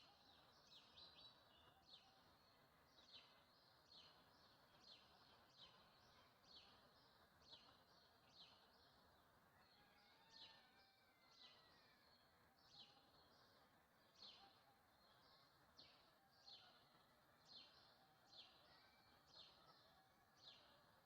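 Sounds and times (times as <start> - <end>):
faint bird chirps: 0.0 - 21.0.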